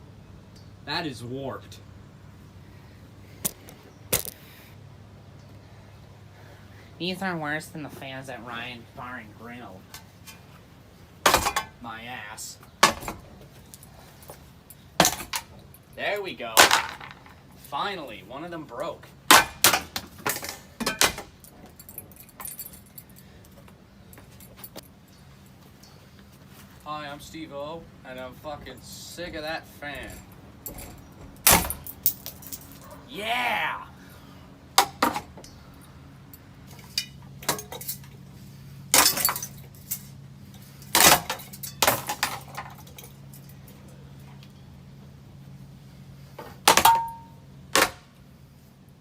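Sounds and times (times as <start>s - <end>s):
loose fan parts clanking: 7.8s - 12.0s, 12.6s - 18.2s, 18.9s - 33.1s, 34.6s - 44.7s, 46.3s - 48.3s
crashing clinking impacts: 30.0s - 33.0s, 38.9s - 43.7s, 46.7s - 48.0s.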